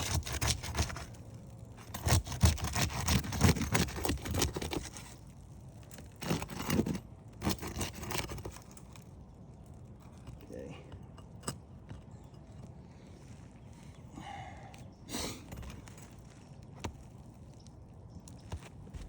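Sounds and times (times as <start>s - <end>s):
pry bar tearing shingles: 0.0s - 9.1s.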